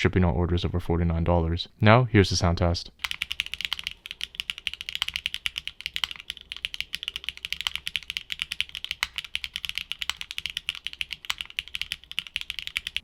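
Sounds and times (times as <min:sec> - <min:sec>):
mechanical keyboard typing: 0:03.0 - 0:13.0.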